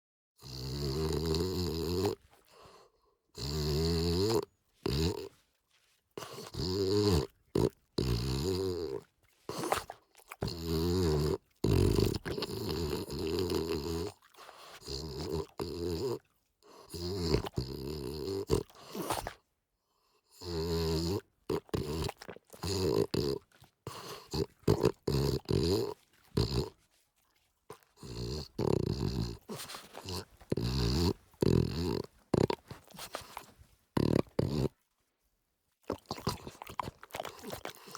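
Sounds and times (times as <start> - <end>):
dog snore-like purring: 0.4 - 2.3, 3.4 - 5.4, 6.2 - 19.4, 20.4 - 26.8, 27.7 - 34.8, 35.9 - 37.9.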